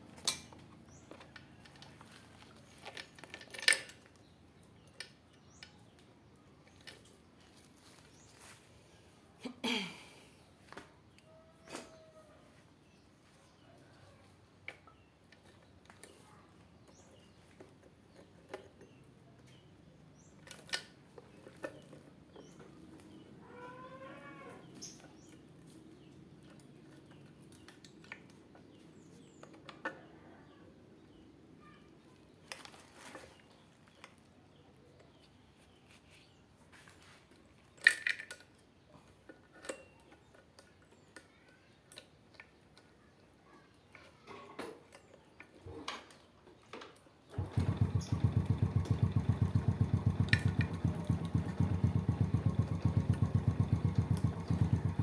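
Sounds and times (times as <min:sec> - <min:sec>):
metal clicks and clinks: 0:02.8 - 0:04.2.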